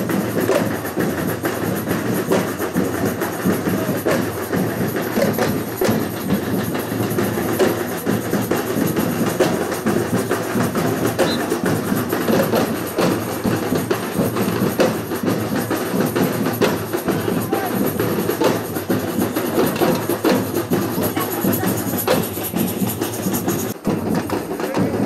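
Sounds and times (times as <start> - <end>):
samba drums and hand percussion: 0.0 - 25.0.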